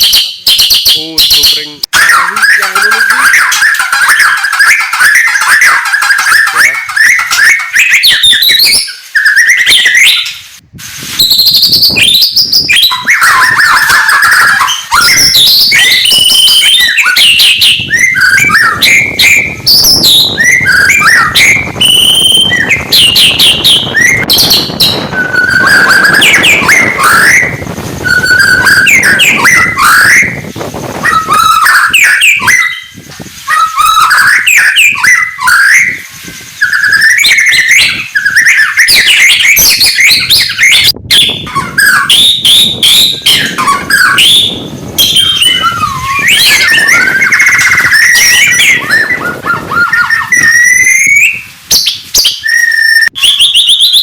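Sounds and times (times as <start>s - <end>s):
bird singing whistles and chirps: 0.0s - 54.0s.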